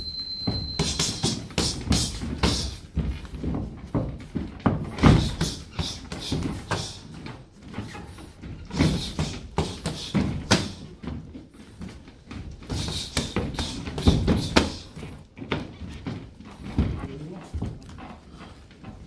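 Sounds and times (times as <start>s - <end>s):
punches and kicks landing: 0.8s - 6.9s, 12.7s - 14.9s.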